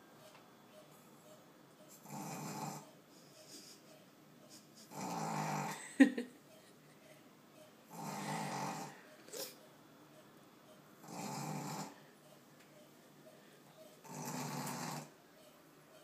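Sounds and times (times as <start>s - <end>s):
puppy snoring: 1.9s - 2.9s, 4.8s - 5.8s, 7.9s - 9.6s, 11.0s - 12.0s, 14.0s - 15.2s.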